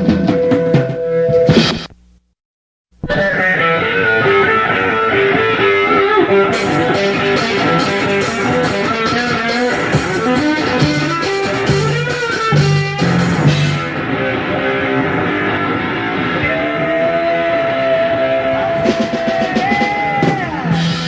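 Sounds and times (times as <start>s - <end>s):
bass and drums: 0.0s - 2.3s, 2.9s - 21.0s
electric guitar: 3.0s - 21.0s.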